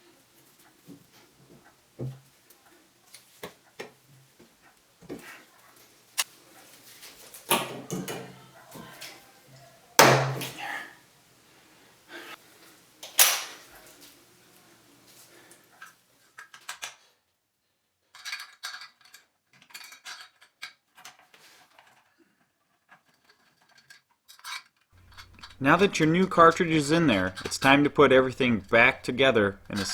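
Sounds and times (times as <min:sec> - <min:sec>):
tools clinking on metal and plastic: 0:25.0 - 0:29.9.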